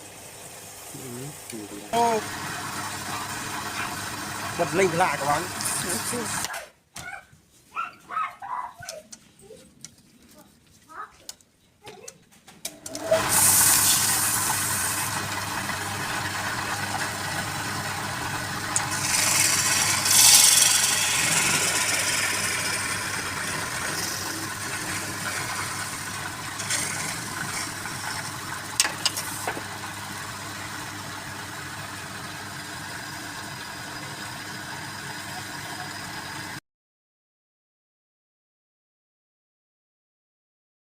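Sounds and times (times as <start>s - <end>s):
woodturning lathe motor humming: 1.5s - 6.5s, 12.7s - 36.6s
loud high hiss: 13.1s - 28.2s.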